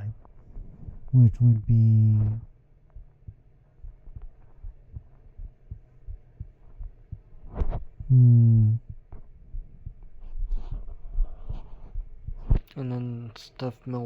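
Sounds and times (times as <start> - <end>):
low steady hum: 0.0 - 14.0
man saying umm: 1.2 - 2.5, 8.1 - 8.9.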